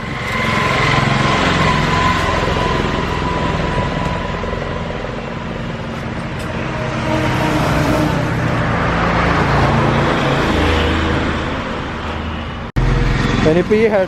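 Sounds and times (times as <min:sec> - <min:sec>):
high-pitched whine: 0:00.0 - 0:14.0.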